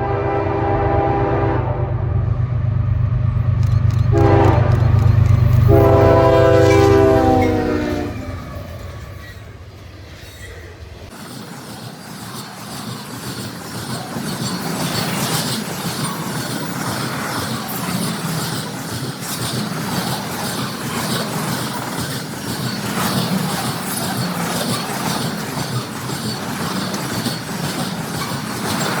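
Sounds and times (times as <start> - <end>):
locomotive horn: 0.0 - 2.3, 4.1 - 8.5
freight cars rumbling: 0.0 - 29.0
wheel clatter on rails: 3.3 - 29.0.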